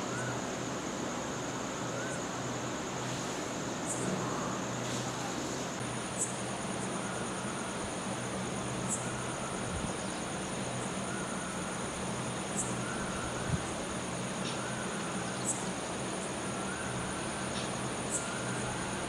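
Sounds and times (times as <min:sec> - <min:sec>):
crickets chirping: 0:00.0 - 0:19.0
low hum and hiss: 0:00.0 - 0:19.0.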